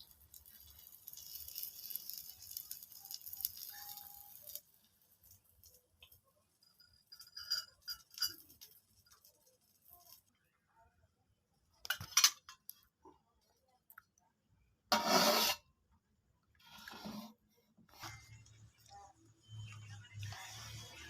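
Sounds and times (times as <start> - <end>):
dishes and cutlery clinking: 6.0 - 9.3, 11.8 - 12.7.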